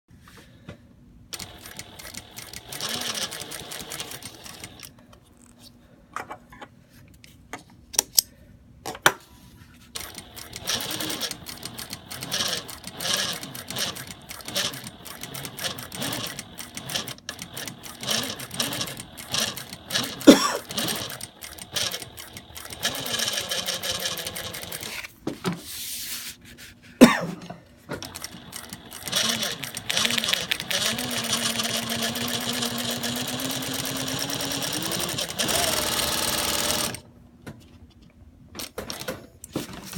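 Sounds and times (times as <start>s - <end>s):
sewing machine clicks: 1.3s - 4.9s, 10.0s - 24.9s, 28.0s - 37.0s
sewing machine sewing: 1.3s - 4.9s, 10.0s - 25.1s, 28.0s - 37.0s
sewing machine whine: 1.3s - 4.9s, 10.0s - 25.0s, 28.0s - 37.0s.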